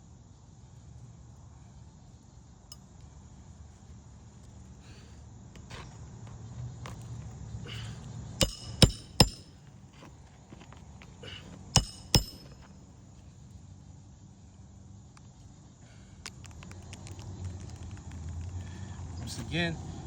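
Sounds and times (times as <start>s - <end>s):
hammer striking nails: 8.4s - 9.6s, 11.8s - 12.7s.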